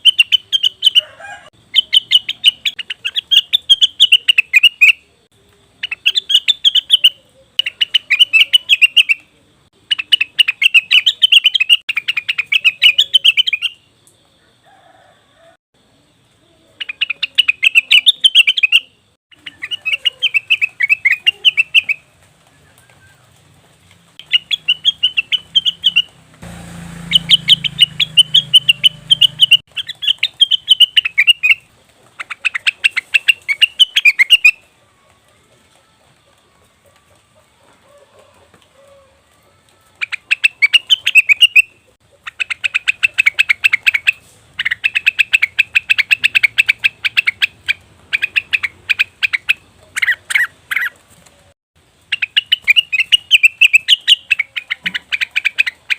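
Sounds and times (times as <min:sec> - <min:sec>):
bird chattering song: 0:00.0 - 0:01.0, 0:01.6 - 0:13.9, 0:16.7 - 0:23.2, 0:24.2 - 0:26.2, 0:27.0 - 0:34.6, 0:40.0 - 0:51.0, 0:52.1 - 0:55.9.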